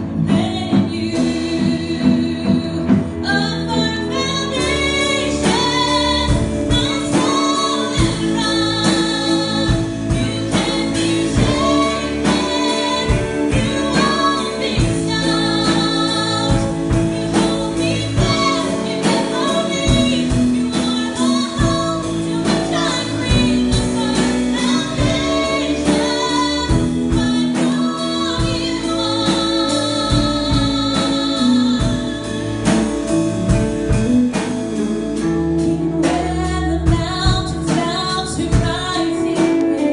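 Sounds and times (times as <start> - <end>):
worship song with vocals and band: 0.0 - 39.9.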